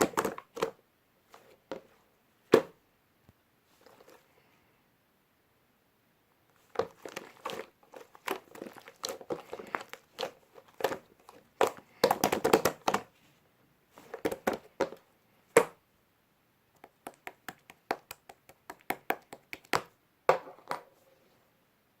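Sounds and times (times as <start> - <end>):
slime crackling and popping: 6.8 - 13.0.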